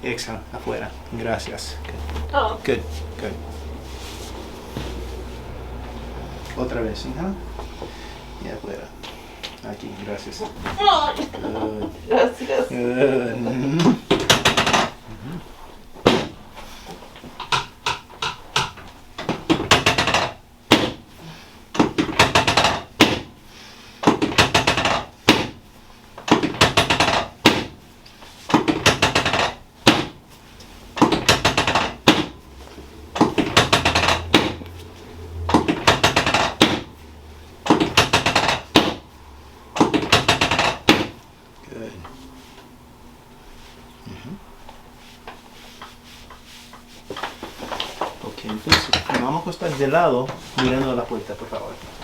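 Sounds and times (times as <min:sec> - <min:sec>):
rapid percussive tapping on body: 0:13.8 - 0:15.0, 0:17.4 - 0:21.1, 0:21.8 - 0:23.3, 0:24.0 - 0:25.6, 0:26.3 - 0:27.8, 0:28.5 - 0:30.2, 0:31.0 - 0:34.8, 0:35.5 - 0:37.0, 0:37.6 - 0:39.1, 0:39.8 - 0:41.2.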